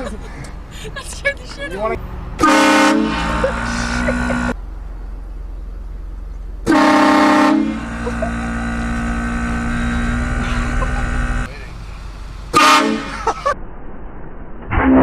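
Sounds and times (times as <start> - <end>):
train horn chord: 2.4 - 4.5, 6.7 - 10.8, 12.6 - 13.1.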